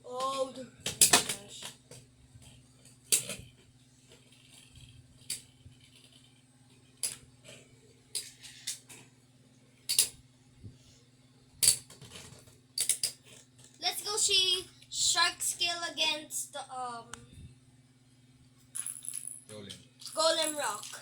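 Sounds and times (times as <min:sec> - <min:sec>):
low steady hum: 0:00.0 - 0:21.0
plastic clicks and clacks: 0:09.9 - 0:10.2, 0:11.6 - 0:13.8.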